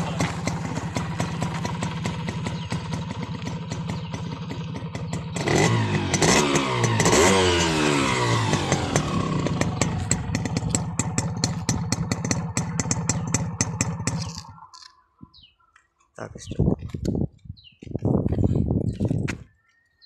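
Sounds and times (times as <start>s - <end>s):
motorcycle engine idling and revving: 0.0s - 15.5s.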